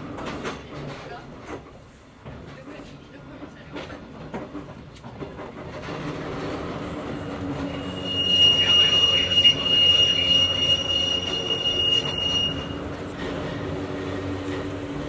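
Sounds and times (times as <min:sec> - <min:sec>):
railcar motor rumble and hum: 0:00.0 - 0:15.0
high-pitched wheel squeal: 0:07.6 - 0:12.9.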